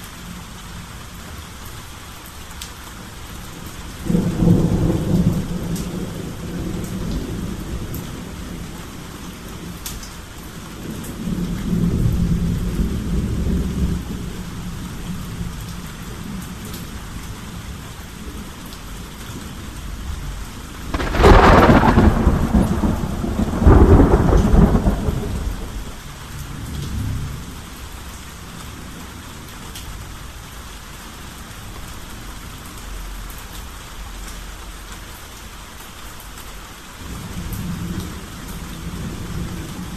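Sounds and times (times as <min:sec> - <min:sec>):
steady rain falling: 0:00.0 - 0:39.9
low rolling thunder: 0:04.0 - 0:09.8, 0:20.2 - 0:27.6
loud thunderclaps: 0:20.9 - 0:26.0.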